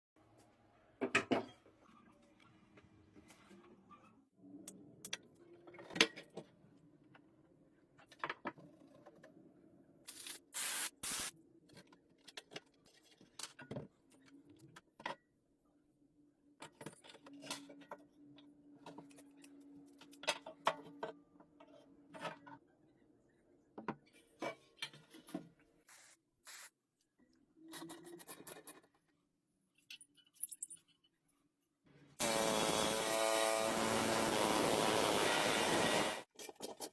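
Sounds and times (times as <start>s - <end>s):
short hissing bursts: 10.1s - 11.3s, 25.9s - 26.7s.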